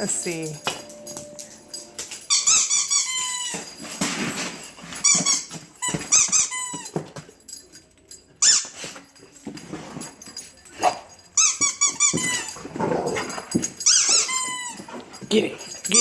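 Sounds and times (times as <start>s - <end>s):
squeaky dog toy squeaking: 2.3s - 3.8s, 5.0s - 7.0s, 13.8s - 15.0s.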